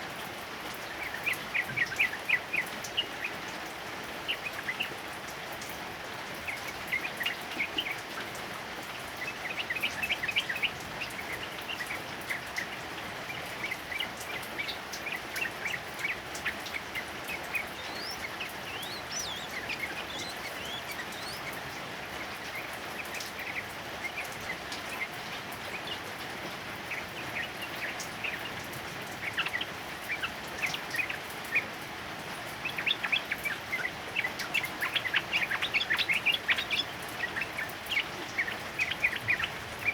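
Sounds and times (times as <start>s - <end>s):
heavy rain hissing: 0.0s - 39.9s
bird song with chirpy notes: 9.2s - 26.0s, 32.6s - 39.9s.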